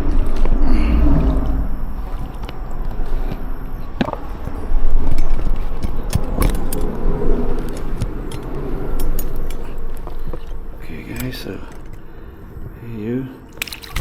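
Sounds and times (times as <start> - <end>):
steady low rumble: 0.0 - 13.6
clicks and jangling rattles: 5.2 - 12.1.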